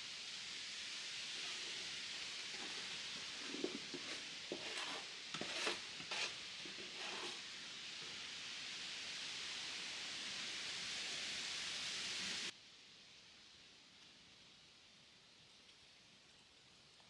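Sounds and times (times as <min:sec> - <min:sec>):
steady hiss: 0:00.0 - 0:17.0
short scrapes and knocks: 0:02.5 - 0:07.4.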